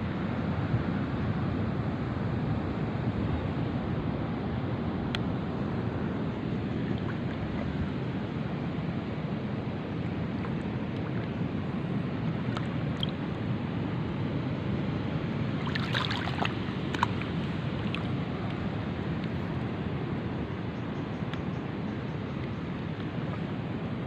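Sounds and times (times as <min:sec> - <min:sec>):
wind: 0:00.0 - 0:24.0
sea waves: 0:02.4 - 0:20.7.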